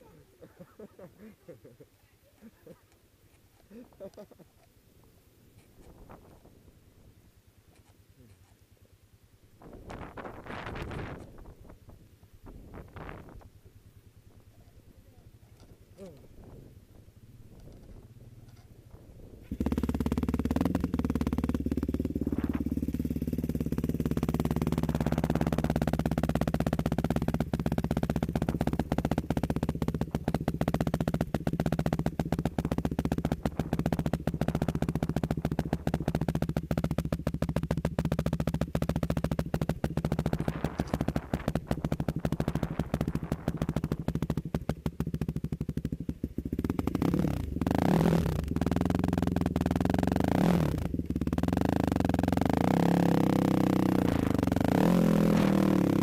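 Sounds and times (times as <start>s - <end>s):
quad engine running: 5.5s - 56.0s.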